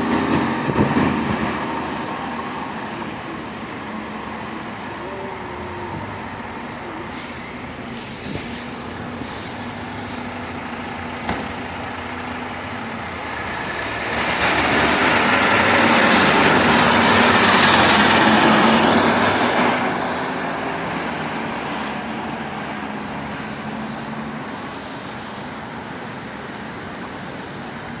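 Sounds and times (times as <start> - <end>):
diesel truck engines running: 0.0 - 28.0
truck passing close: 0.0 - 28.0
sharp clicks and hisses: 7.1 - 11.7.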